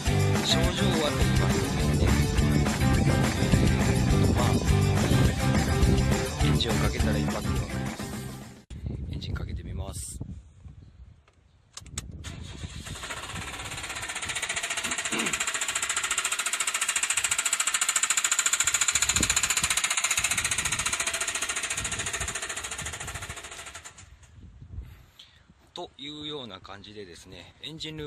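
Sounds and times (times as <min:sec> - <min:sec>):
loud metallic engine knocking: 0:12.9 - 0:24.0.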